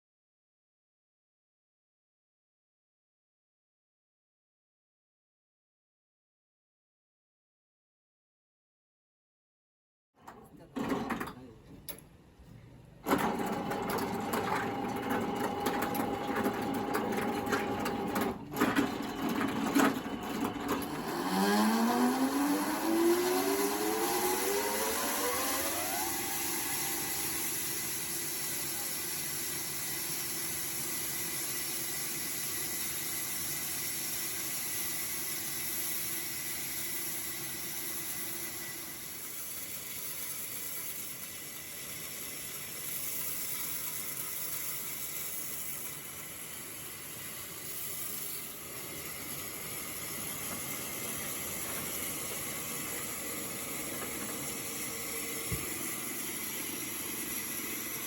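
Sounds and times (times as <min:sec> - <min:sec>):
sawmill saw running: 0:19.4 - 0:58.0.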